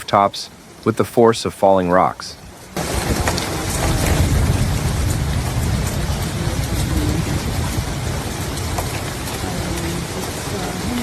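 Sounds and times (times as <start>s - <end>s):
hail and rain pelting down: 0.0s - 11.0s
heavy low rumble: 2.8s - 11.0s.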